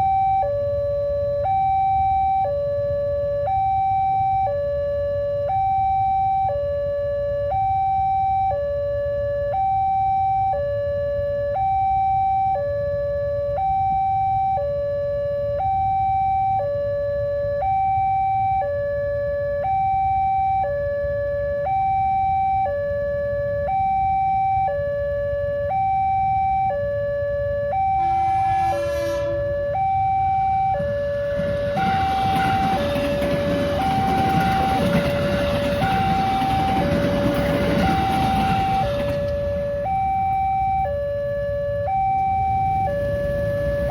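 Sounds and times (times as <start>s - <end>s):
two-tone crossing alarm: 0.0s - 43.9s
burst of noise: 27.8s - 34.0s
rumbling noise: 27.8s - 40.3s.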